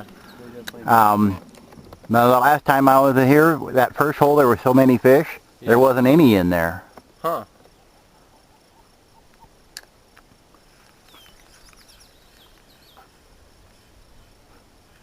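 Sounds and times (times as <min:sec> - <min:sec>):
insects droning: 0:00.0 - 0:15.0
short bird chirps: 0:11.0 - 0:13.1.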